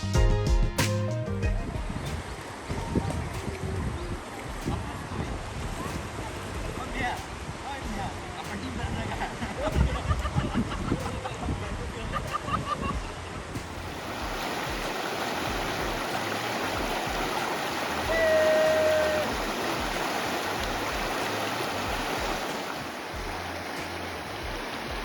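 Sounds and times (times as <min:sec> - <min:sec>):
river water rushing: 0:01.8 - 0:09.6, 0:13.6 - 0:25.0
held call: 0:17.9 - 0:20.0.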